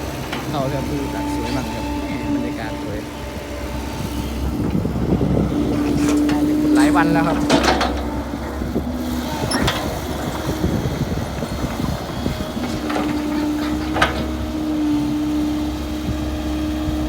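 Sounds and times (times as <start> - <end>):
clunks and knocks: 0.0 - 17.0
excavator diesel engine running: 0.0 - 17.0.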